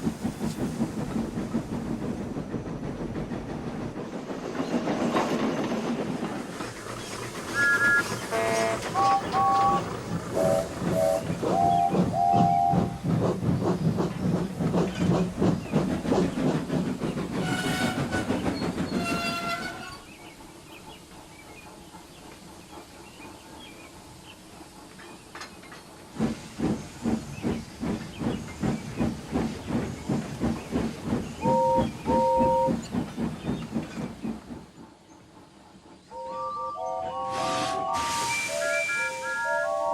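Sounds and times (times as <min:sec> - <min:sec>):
steam locomotive puffing: 0:00.0 - 0:20.5, 0:37.1 - 0:39.9
steam whistle blasts: 0:37.1 - 0:39.9.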